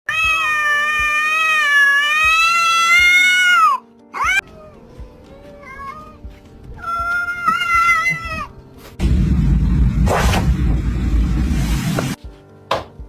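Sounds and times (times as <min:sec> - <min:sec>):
cat meowing: 0:00.1 - 0:04.8, 0:06.8 - 0:08.5.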